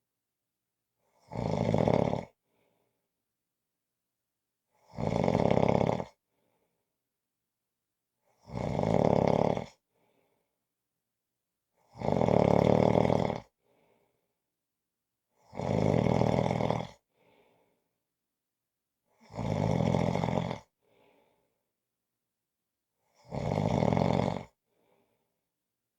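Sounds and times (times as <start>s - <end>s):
person snoring: 1.2s - 2.4s, 4.9s - 6.2s, 8.5s - 9.8s, 12.0s - 13.5s, 15.5s - 17.0s, 19.3s - 20.7s, 23.2s - 24.6s.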